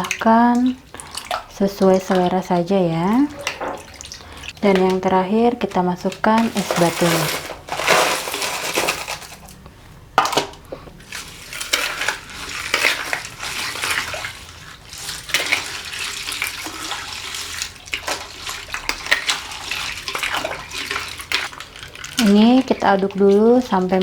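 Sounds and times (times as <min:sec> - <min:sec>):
ice cubes splashing into liquid: 0:00.0 - 0:09.6, 0:10.2 - 0:24.0
ice and utensil clinking on bowl: 0:06.0 - 0:09.6, 0:11.1 - 0:23.4.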